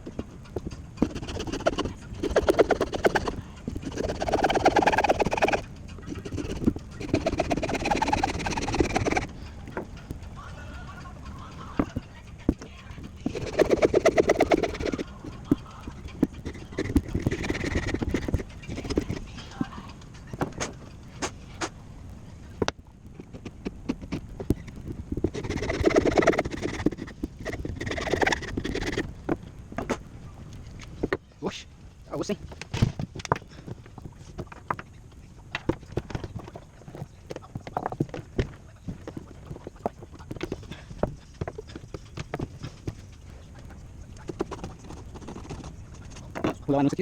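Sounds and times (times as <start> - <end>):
rapid knocking and rasping: 0.0 - 21.8, 22.6 - 31.4, 32.2 - 47.0.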